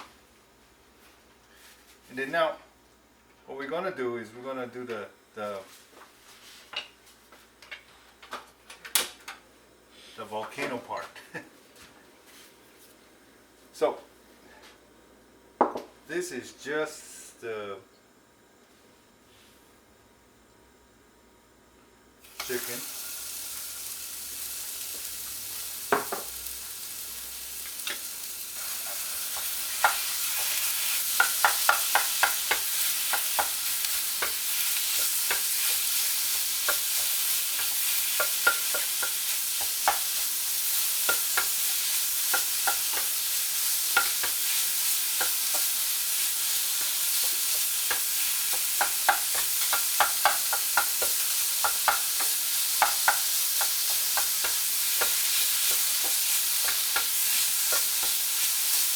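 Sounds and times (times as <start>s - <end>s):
chicken sizzling in hot oil: 22.2s - 58.9s.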